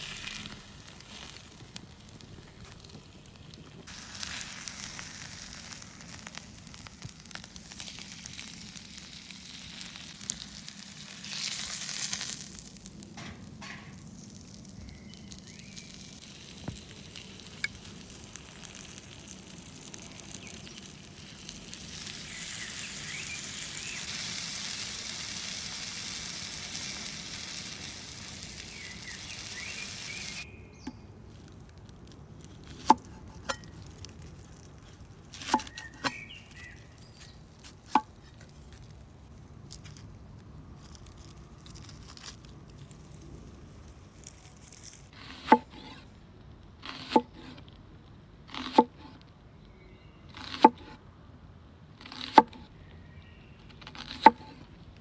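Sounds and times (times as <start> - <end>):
food sizzling in frying: 0.0 - 30.5.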